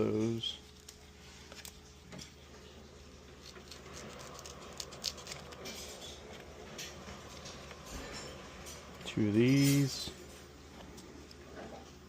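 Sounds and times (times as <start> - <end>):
scissors cutting: 3.4 - 5.7.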